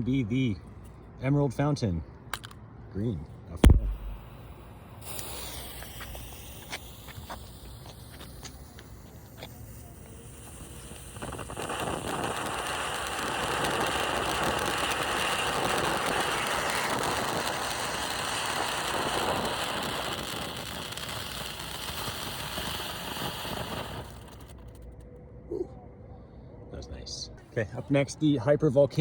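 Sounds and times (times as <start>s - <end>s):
firework fountain hissing: 3.6s - 25.0s.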